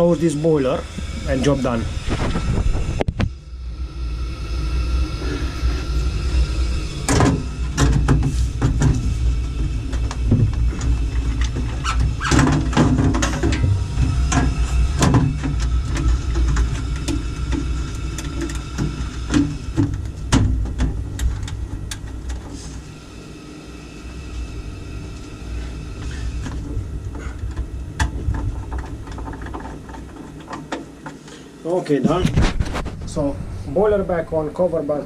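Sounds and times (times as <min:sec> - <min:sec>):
boiler humming: 0:00.0 - 0:35.0.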